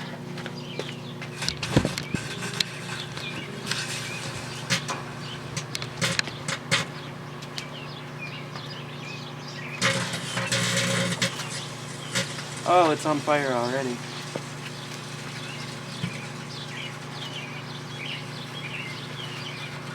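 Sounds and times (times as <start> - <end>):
microwave oven hum: 0.0 - 19.9
electrical arcing snaps and crackles: 1.2 - 7.8, 9.8 - 19.9.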